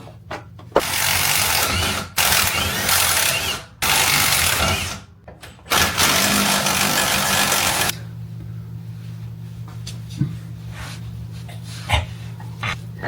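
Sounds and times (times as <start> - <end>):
pneumatic air tool running: 0.8 - 5.0, 5.7 - 8.0.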